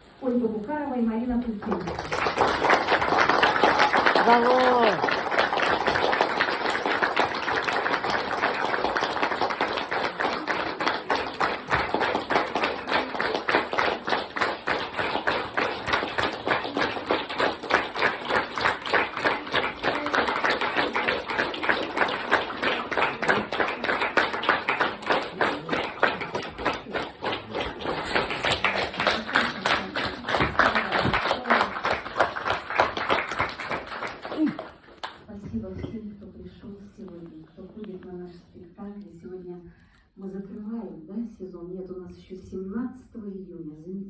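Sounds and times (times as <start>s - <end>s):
audience clapping in unison: 1.6s - 35.3s.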